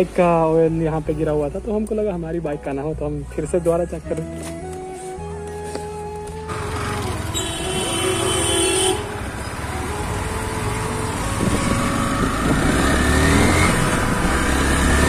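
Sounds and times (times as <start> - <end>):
engine accelerating: 6.4 - 8.5, 9.1 - 15.0
vehicle horn: 7.2 - 9.3.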